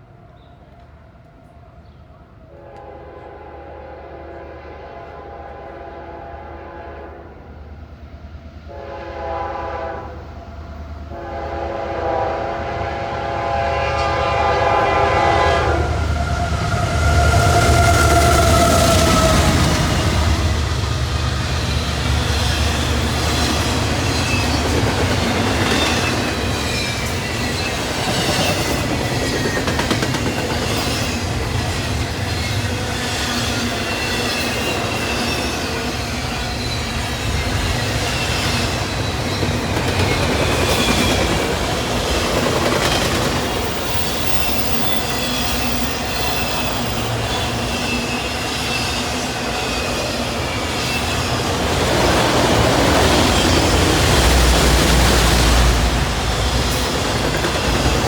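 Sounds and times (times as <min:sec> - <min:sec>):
freight train rolling past: 0:00.0 - 0:58.0
wheels clacking over rail joints: 0:17.8 - 0:58.0
high-pitched wheel squeal: 0:43.6 - 0:51.4.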